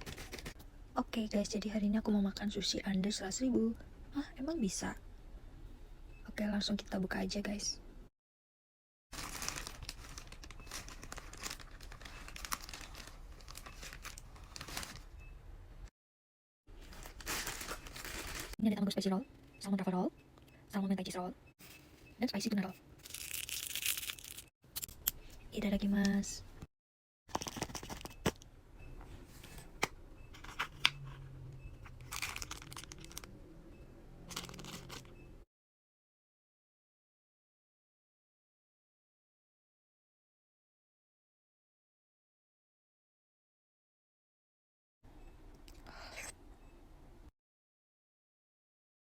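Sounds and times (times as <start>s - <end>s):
packaging crinkling and rustling: 0.0s - 0.6s, 9.1s - 15.2s, 16.8s - 18.6s, 27.3s - 28.4s, 31.9s - 33.3s, 34.3s - 35.1s.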